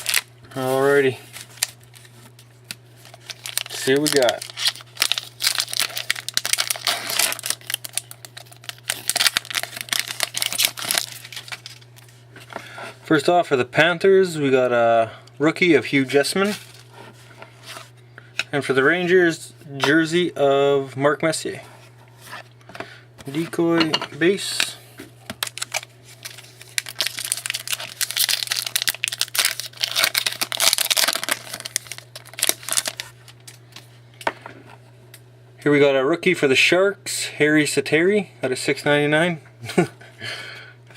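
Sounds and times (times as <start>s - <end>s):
cards and wrapper rustling: 0.0s - 12.5s, 16.4s - 17.9s, 25.3s - 33.9s
low electrical hum: 0.0s - 40.9s.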